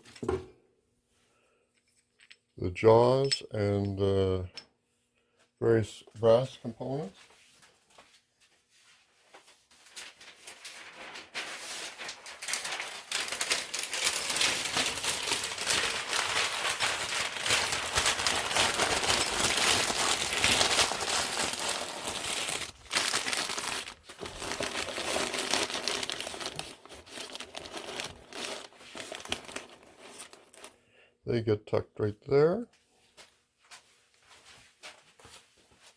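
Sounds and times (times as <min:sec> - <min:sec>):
packing paper crumpling: 0:09.4 - 0:30.7.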